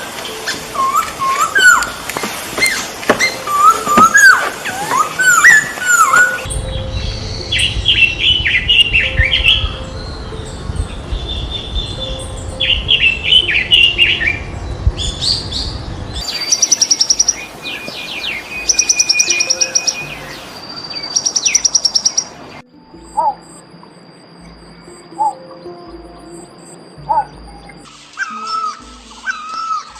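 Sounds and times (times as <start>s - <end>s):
songbirds chirping: 0.0s - 29.9s
rapid high bird trills: 0.2s - 6.5s, 16.2s - 22.4s, 26.2s - 29.9s
low rumble: 6.5s - 16.2s.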